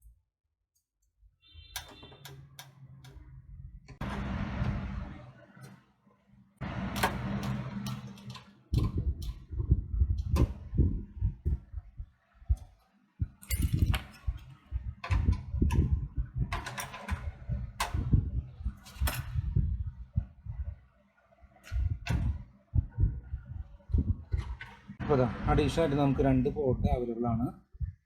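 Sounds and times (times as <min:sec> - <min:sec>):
low handling rumble: 0:03.0 - 0:05.6, 0:06.6 - 0:12.6, 0:13.2 - 0:20.8, 0:21.7 - 0:27.0.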